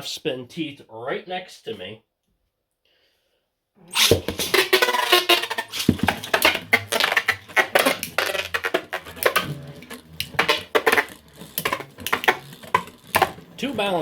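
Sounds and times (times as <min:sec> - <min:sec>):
spinning top whir: 0:04.0 - 0:14.0.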